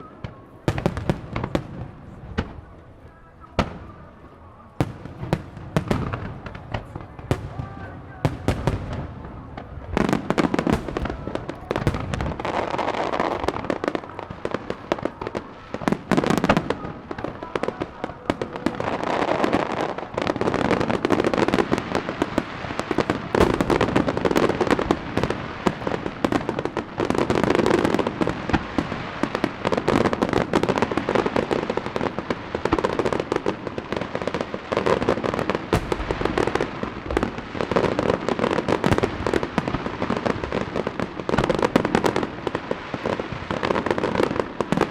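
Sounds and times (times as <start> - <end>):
dense firework crackling: 0.0 - 44.9
firework shells bursting: 23.1 - 26.8, 35.7 - 40.6.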